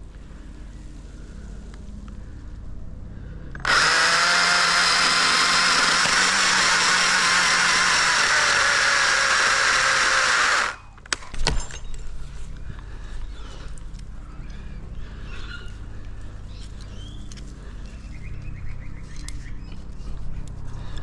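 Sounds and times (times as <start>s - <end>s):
chainsaw cutting: 3.6s - 11.1s.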